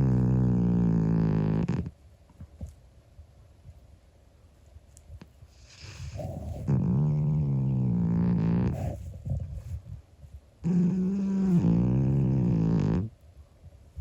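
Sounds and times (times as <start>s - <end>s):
cat snoring: 0.0s - 1.9s, 5.6s - 9.1s, 10.6s - 13.1s
quiet breaths: 4.5s - 14.0s.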